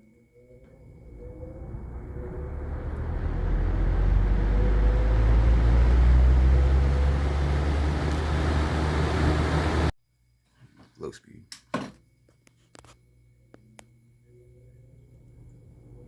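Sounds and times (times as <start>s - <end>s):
faint motor hum: 0.6s - 9.9s
electric fan airflow rushing: 0.7s - 9.9s.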